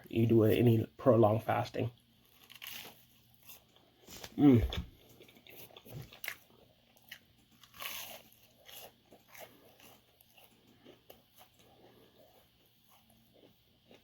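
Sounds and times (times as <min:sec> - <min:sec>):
crunching crisp food: 0:02.2 - 0:14.0.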